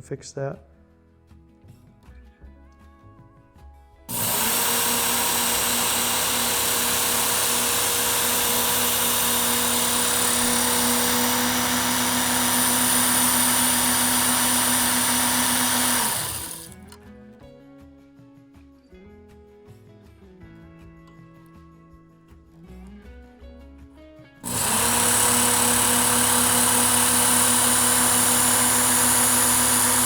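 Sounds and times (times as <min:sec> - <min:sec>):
belt sharpener motor humming: 0:04.1 - 0:17.0, 0:24.4 - 0:30.0.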